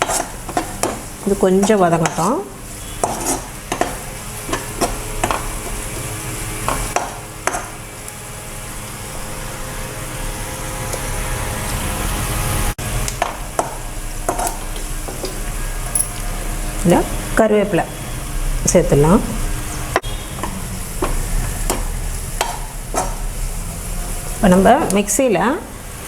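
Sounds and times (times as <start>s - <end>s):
spoon scraping pan: 0.0s - 7.8s, 13.0s - 17.1s, 19.0s - 23.6s
onions sizzling in hot oil: 0.0s - 26.0s.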